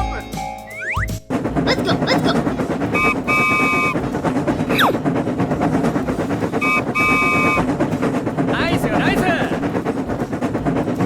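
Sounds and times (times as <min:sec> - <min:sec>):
clatter: 0:01.0 - 0:11.0
cartoon train horn: 0:02.8 - 0:04.0, 0:06.6 - 0:07.7.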